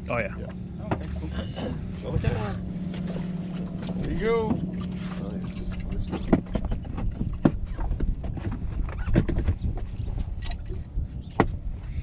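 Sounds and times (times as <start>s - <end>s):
steady low rumble: 0.0s - 12.0s
knocks and thumps: 5.6s - 9.9s.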